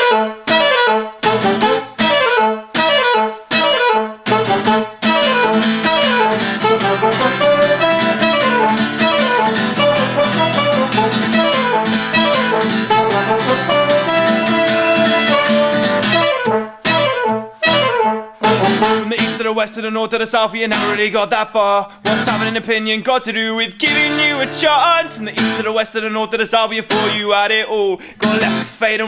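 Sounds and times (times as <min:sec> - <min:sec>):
rock band instrumental with guitar: 0:00.0 - 0:19.1.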